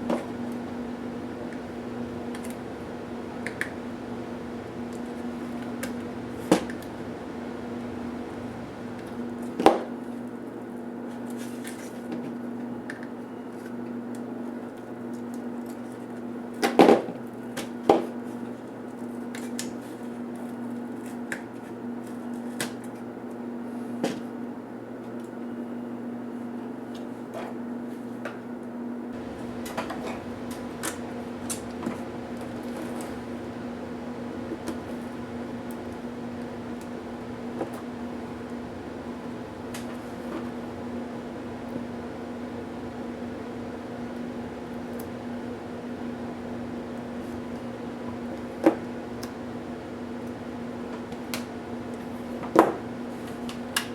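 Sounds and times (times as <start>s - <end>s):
steady electrical hum: 0.0s - 16.6s, 27.8s - 53.9s.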